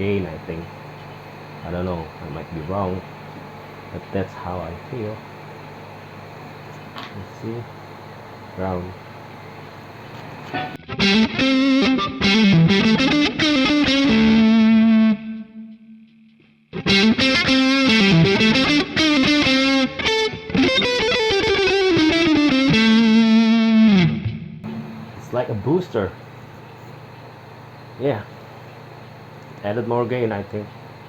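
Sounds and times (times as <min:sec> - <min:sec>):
distorted electric guitar: 0:10.5 - 0:25.1.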